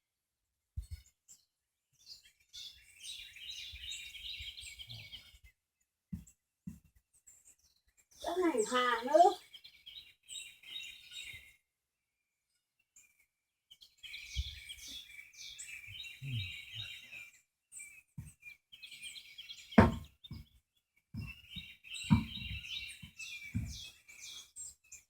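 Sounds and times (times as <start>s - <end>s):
birds chirping: 8.2s - 11.5s, 14.0s - 20.6s, 21.2s - 24.8s
dull knocks: 19.8s - 20.4s, 22.1s - 22.6s, 23.6s - 23.8s.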